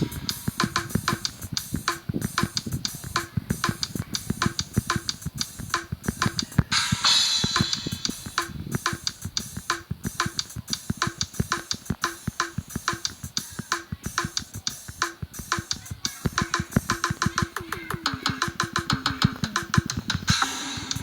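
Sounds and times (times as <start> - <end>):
drum kit groove: 0.0 - 21.0
cymbal crash: 6.7 - 8.6, 20.3 - 21.0.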